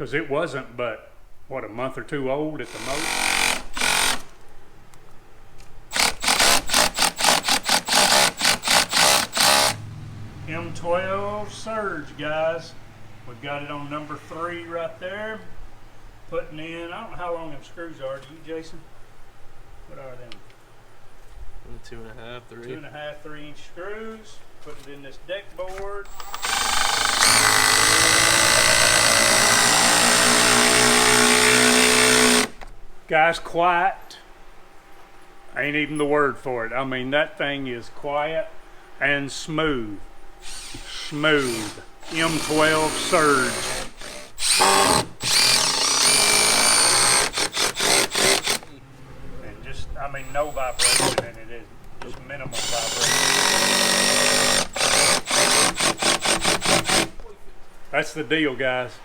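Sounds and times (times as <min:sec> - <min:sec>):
impact driver driving a screw: 0:02.7 - 0:04.4, 0:05.9 - 0:09.8, 0:26.1 - 0:32.7, 0:40.4 - 0:48.7, 0:50.2 - 0:51.3, 0:52.5 - 0:57.2.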